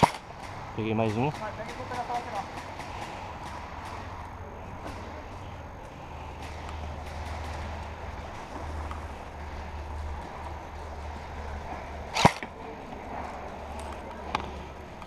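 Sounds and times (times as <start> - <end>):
rumble and rustle of movement: 0.0 - 15.0
airsoft gun shot: 12.2 - 12.5.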